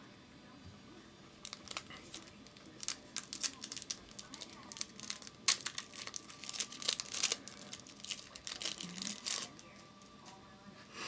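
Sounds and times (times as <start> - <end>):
card pack wrapper tearing and crinkling: 1.4 - 9.8.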